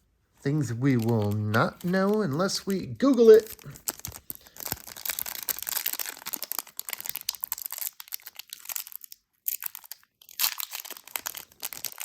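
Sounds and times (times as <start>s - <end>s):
cards being handled: 0.5s - 5.4s
foil wrapper crinkling: 0.5s - 12.0s.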